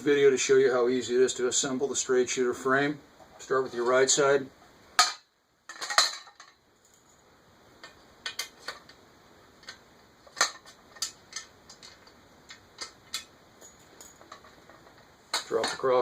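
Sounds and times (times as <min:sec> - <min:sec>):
frame parts clicking and tapping: 0:09.6 - 0:16.0.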